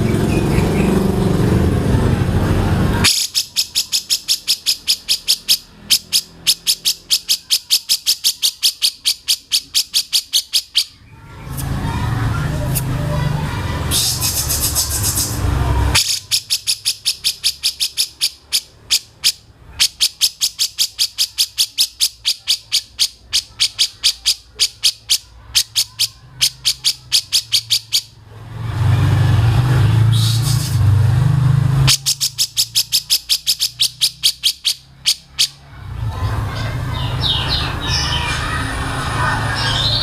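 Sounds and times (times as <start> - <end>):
loud low hum: 0.0 - 3.3, 28.2 - 32.4.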